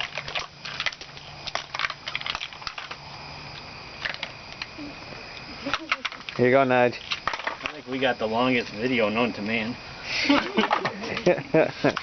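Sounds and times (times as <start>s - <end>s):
ice cubes clinking into bucket: 0.0s - 3.0s, 7.0s - 7.8s.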